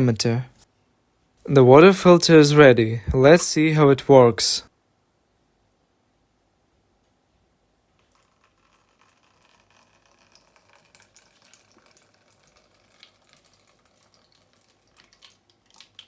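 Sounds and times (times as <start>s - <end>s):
water trickling through filter: 8.0s - 16.0s.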